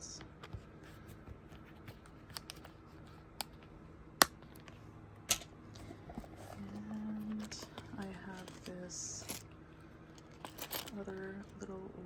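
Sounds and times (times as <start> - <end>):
wallet and cards clicking: 0.2 - 9.4.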